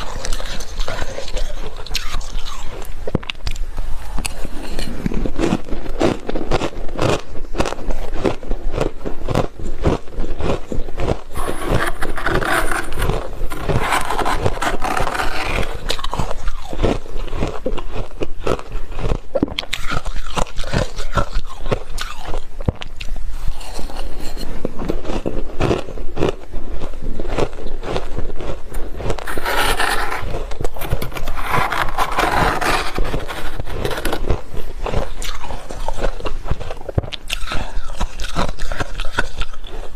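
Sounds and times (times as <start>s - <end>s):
crunching of frost being chewed: 0.0s - 39.9s
scraping: 11.3s - 15.9s, 29.2s - 34.4s.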